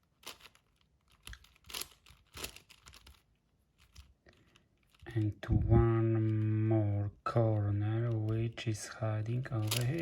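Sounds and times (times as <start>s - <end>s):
puzzle cube layers turning: 0.0s - 5.1s.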